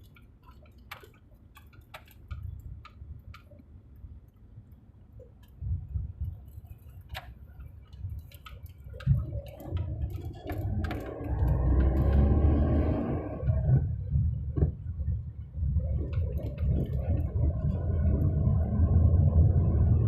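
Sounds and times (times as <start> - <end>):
car engine on rough track: 9.0 - 20.0.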